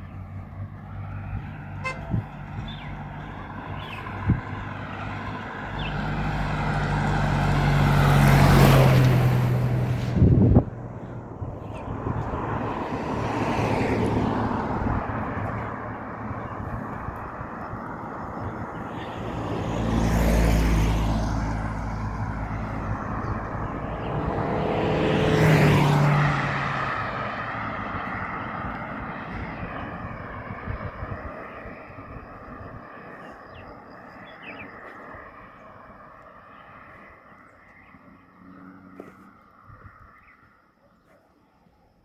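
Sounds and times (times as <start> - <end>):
vehicles passing by: 0.0 - 42.0.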